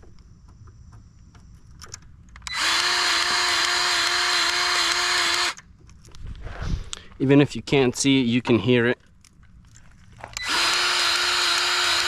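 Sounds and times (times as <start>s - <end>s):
grease gun motor running: 2.4s - 5.6s, 10.2s - 12.0s.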